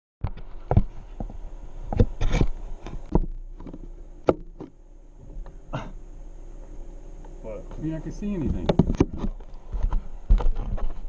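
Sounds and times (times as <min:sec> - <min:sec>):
camera handling knocks and rubbing: 0:00.2 - 0:05.5, 0:08.4 - 0:11.0.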